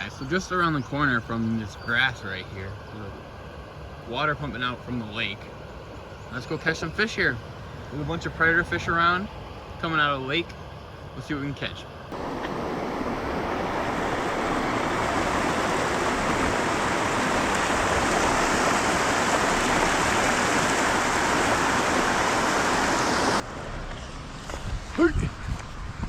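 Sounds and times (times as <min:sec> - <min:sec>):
heavy rushing water: 0:12.1 - 0:23.5.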